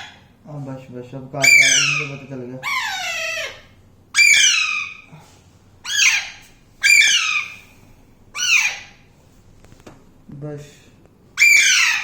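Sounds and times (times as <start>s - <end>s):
parrot squawking: 0.0s - 0.3s, 1.4s - 5.2s, 5.8s - 9.1s, 11.4s - 12.0s.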